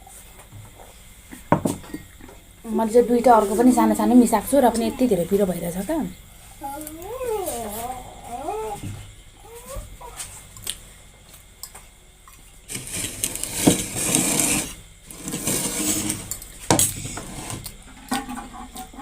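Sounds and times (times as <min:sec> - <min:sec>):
noodles being slurped: 0:12.7 - 0:16.4.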